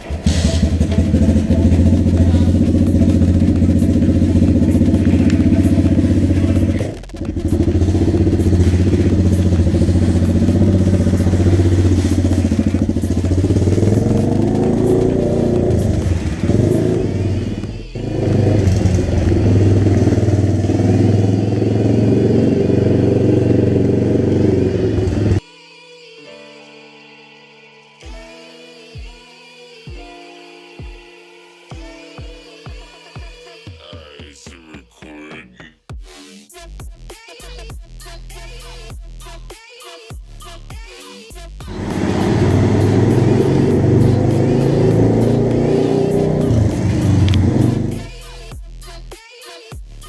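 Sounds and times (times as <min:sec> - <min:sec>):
motorbike engine revving: 0:00.0 - 0:25.4, 0:41.7 - 0:48.2.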